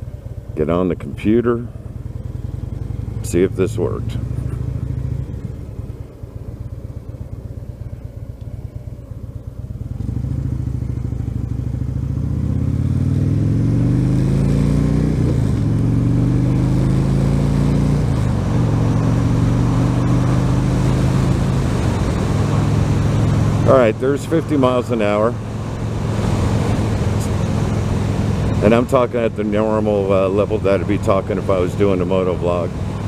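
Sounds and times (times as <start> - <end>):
motorcycle engine accelerating: 0.0 - 33.0.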